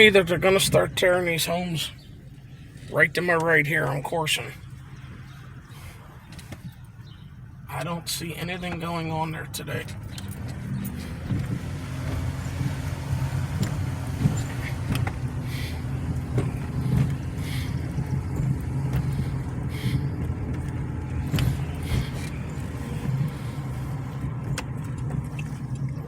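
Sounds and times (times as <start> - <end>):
car engine and road noise: 0.0 - 26.0.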